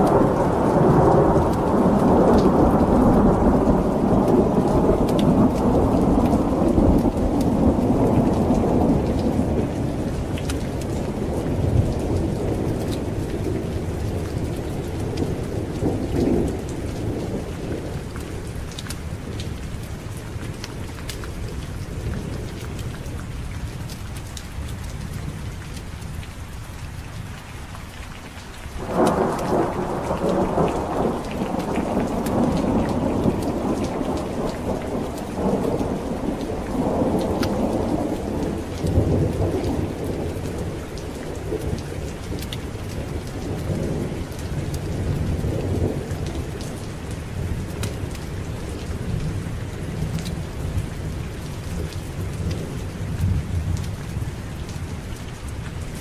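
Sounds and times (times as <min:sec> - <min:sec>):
thunder rolling: 0:00.0 - 0:18.5, 0:28.8 - 0:51.2
heavy rain: 0:00.0 - 0:56.0.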